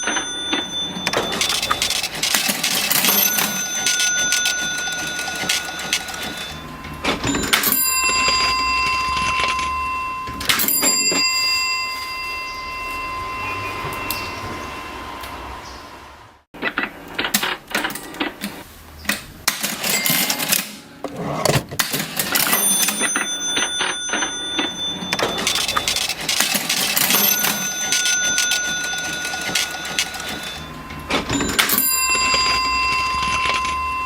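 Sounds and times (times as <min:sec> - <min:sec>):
cash register keys clacking: 0:00.0 - 0:11.7, 0:19.5 - 0:34.0
cash register bell ringing: 0:00.0 - 0:15.2, 0:19.5 - 0:34.0.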